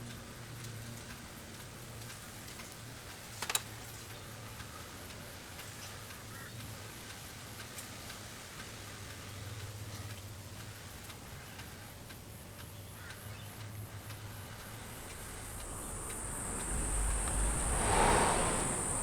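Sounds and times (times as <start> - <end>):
faint small ticks: 0.0 - 19.0
steady low hum: 10.8 - 19.0.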